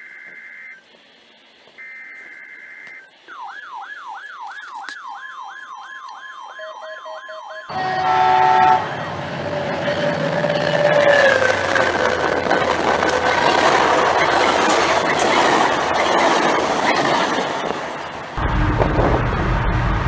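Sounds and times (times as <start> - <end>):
two-tone data warble: 0.0 - 18.6
electronic siren sweeping up: 1.8 - 17.0
chord of steady tones: 1.8 - 20.0.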